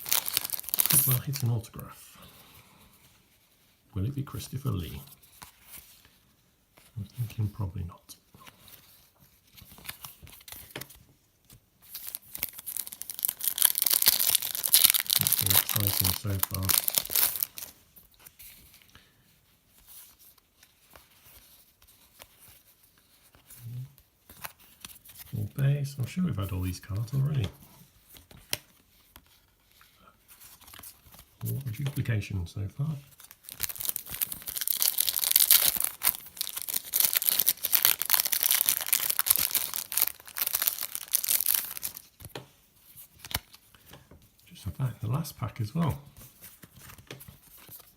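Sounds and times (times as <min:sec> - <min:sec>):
wrapper tearing and crinkling: 0:00.0 - 0:01.7, 0:11.8 - 0:17.8, 0:33.1 - 0:42.3
trading cards rustling: 0:00.0 - 0:01.8, 0:08.5 - 0:18.9, 0:26.3 - 0:32.2, 0:32.8 - 0:44.0, 0:44.7 - 0:47.9.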